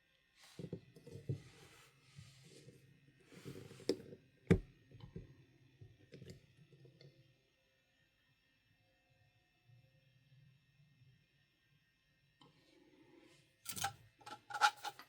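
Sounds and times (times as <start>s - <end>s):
plastic pots rustling and clicking: 13.8s - 15.0s.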